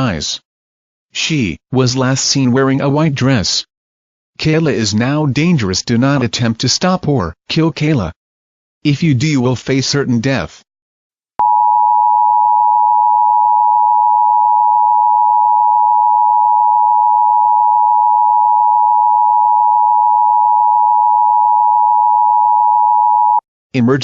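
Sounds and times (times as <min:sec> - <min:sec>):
two-tone alarm: 0:11.4 - 0:23.4.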